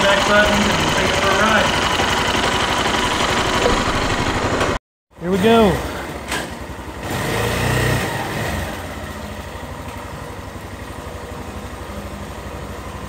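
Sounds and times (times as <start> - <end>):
motorcycle engine throbbing: 0.0 - 4.8.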